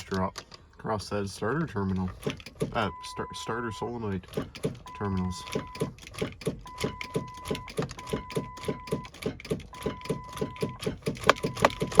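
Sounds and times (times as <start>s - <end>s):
rapid even clicking: 10.8s - 12.0s.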